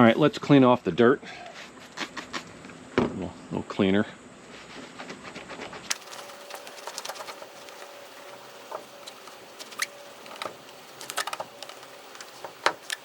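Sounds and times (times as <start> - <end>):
clicking and scraping while cleaning: 4.7 - 13.0.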